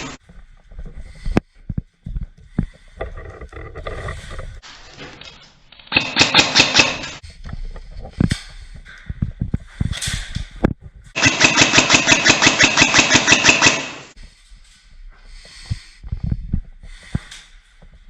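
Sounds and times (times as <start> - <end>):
airsoft guns firing: 5.9 - 7.2, 11.2 - 14.2.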